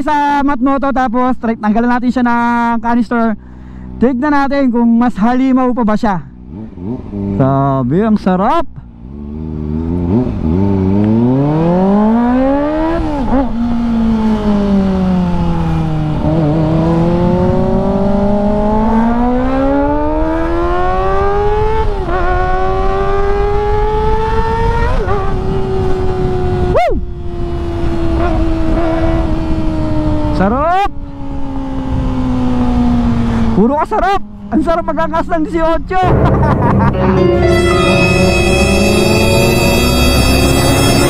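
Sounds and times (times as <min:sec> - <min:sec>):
motorcycle engine revving hard: 0:06.4 - 0:07.6, 0:09.0 - 0:30.3.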